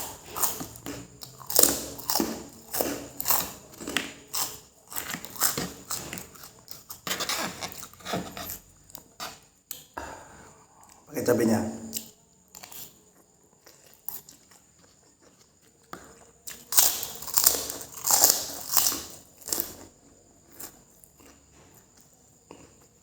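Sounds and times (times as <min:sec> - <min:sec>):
crunchy chewing bites: 0:00.0 - 0:08.6, 0:11.9 - 0:23.0.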